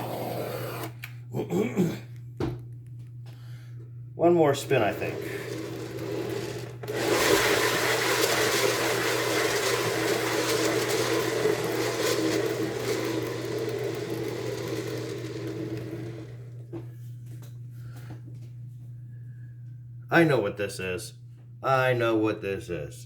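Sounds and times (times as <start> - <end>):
turntable whirring: 0.0 - 1.1, 4.5 - 16.9.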